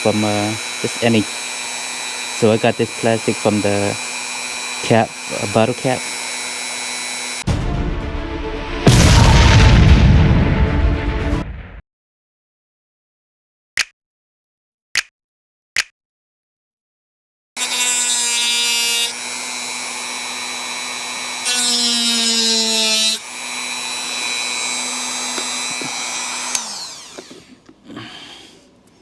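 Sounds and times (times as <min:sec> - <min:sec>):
handheld power tool motor: 0:00.0 - 0:07.4, 0:17.6 - 0:27.6.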